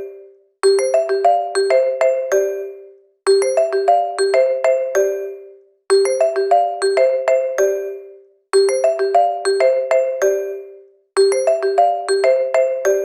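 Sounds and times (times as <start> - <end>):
phone ringtone melody: 6.1 - 7.8, 8.6 - 10.7.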